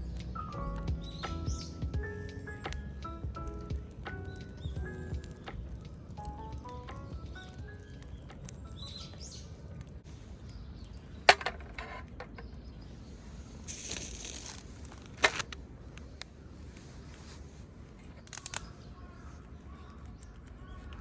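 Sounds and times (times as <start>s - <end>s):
wood fire crackling: 0.0s - 10.1s
fire hissing: 13.5s - 15.0s.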